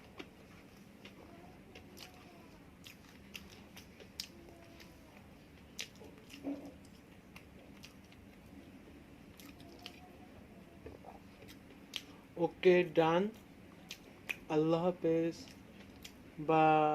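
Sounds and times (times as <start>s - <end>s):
close-up chewing: 0.0s - 8.6s, 9.3s - 10.2s.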